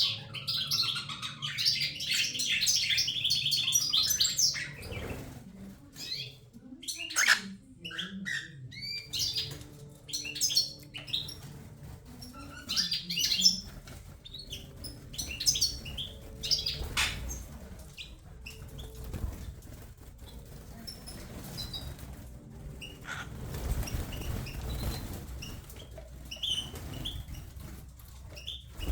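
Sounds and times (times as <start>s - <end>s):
cockatiel chirping: 6.9s - 9.5s.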